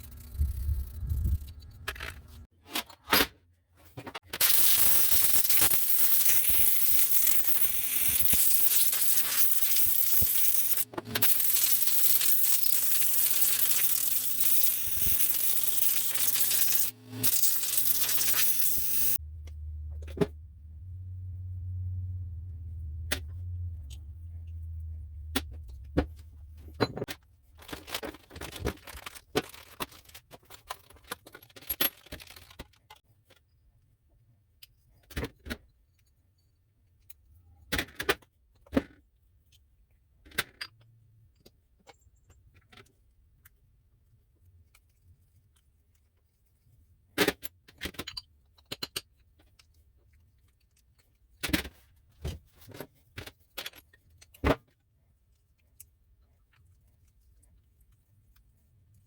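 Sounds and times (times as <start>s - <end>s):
metal parts and tools clinking: 4.1s - 19.2s, 26.6s - 33.0s
low hum: 16.9s - 26.9s.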